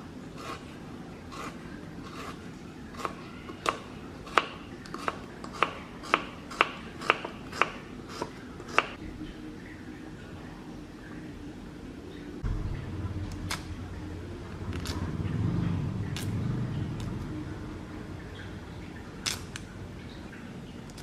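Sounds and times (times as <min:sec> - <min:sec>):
knife chopping on cutting board: 0:03.0 - 0:09.0.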